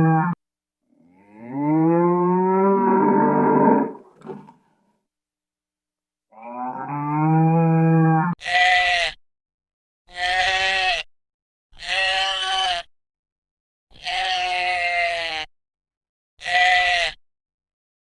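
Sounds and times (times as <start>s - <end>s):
farm animal bleating: 7.5s - 9.2s, 10.1s - 11.1s, 11.8s - 12.9s, 13.9s - 15.5s, 16.4s - 17.2s.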